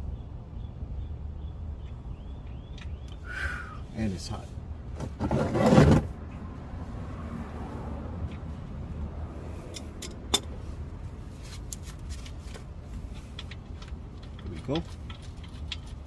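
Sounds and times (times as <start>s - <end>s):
scraping rustle: 5.0s - 6.1s.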